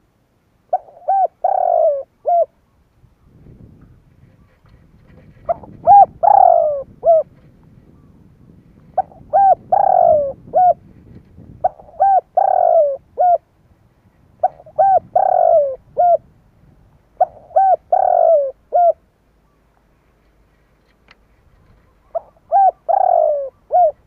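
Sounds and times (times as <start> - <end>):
dove cooing: 0.7 - 2.6, 4.2 - 8.2, 8.9 - 13.5, 14.4 - 16.3, 17.1 - 19.6, 21.7 - 24.0.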